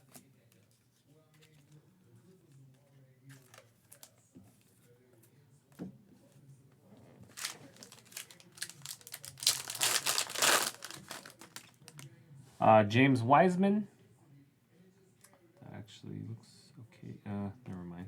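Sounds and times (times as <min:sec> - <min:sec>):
foil pack crinkling and tearing: 0:07.3 - 0:12.0.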